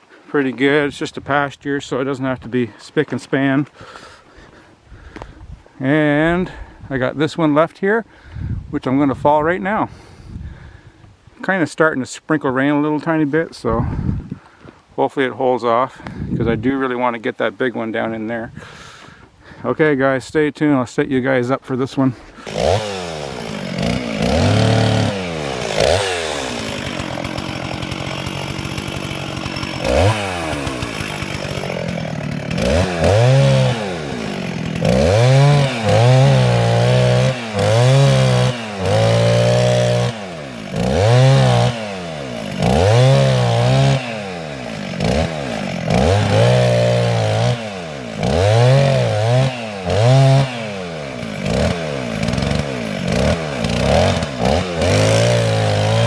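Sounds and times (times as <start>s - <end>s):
chainsaw running and revving: 22.4s - 56.0s.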